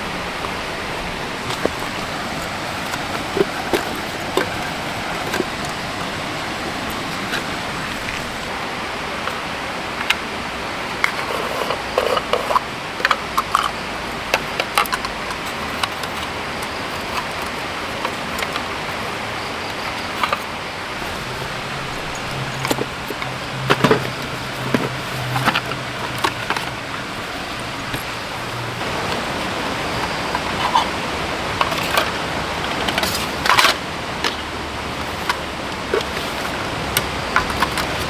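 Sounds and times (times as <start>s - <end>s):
forest stream rushing: 0.0s - 38.0s.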